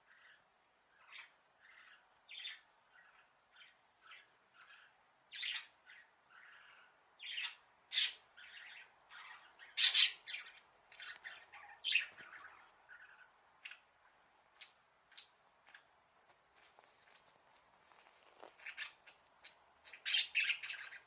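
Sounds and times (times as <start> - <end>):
budgerigars squawking and chirping: 0.1 - 13.9, 18.6 - 21.0.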